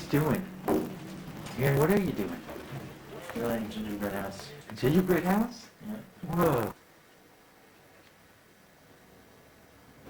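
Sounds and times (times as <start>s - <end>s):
tape hiss: 0.0s - 10.0s.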